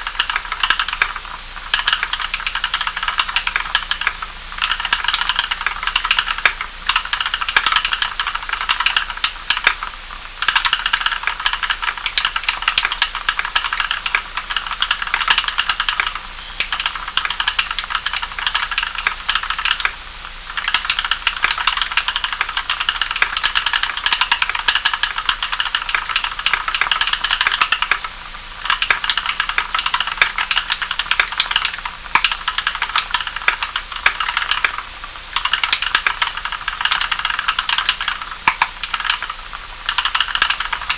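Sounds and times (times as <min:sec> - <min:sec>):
mechanical keyboard typing: 0:00.1 - 0:40.9.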